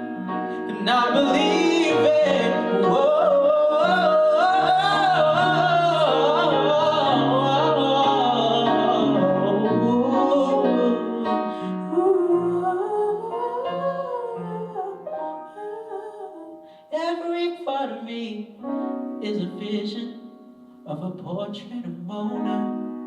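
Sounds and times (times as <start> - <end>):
piano and bass backing music: 0.0 - 23.0.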